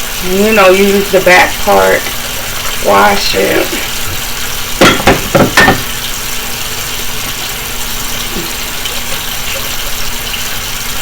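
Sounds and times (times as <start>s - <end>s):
water running from tap: 0.0s - 11.0s
dishes clattering: 4.1s - 6.0s.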